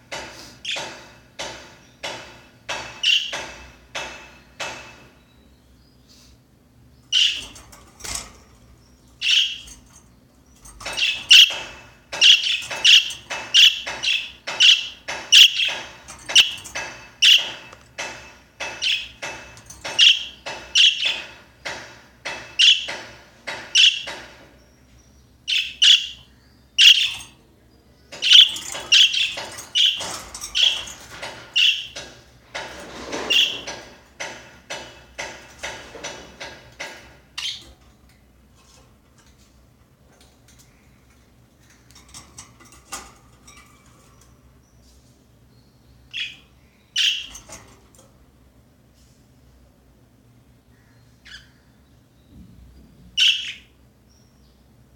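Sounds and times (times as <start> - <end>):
budgerigar chirping: 26.8 - 27.2, 53.2 - 53.6.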